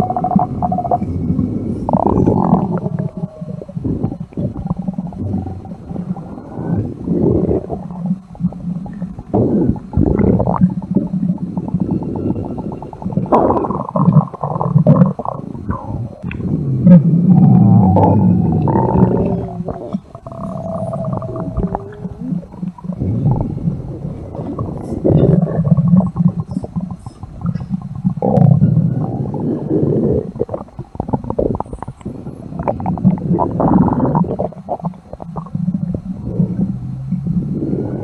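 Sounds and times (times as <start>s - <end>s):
stomach rumbling and gurgling: 0.0s - 38.0s.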